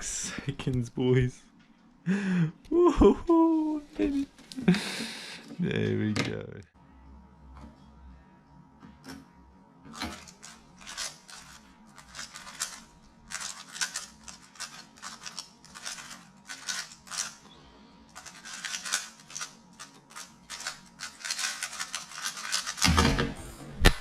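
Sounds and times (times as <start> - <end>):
plastic puzzle cube clicking: 18.2 - 19.5.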